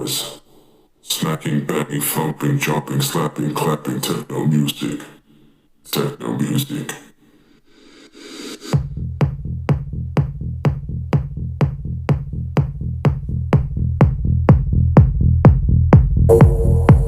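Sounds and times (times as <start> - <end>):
techno music: 8.7 - 17.0
held bass: 8.8 - 17.0
kick drum: 8.8 - 17.0.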